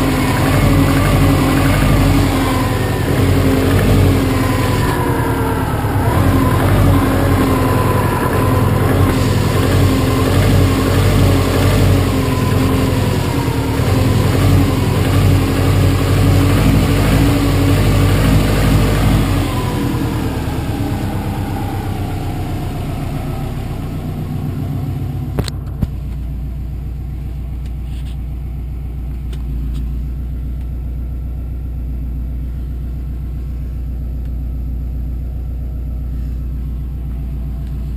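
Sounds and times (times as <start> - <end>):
engine knock: 0.0 - 21.8
car engine revving and idling: 0.0 - 37.9.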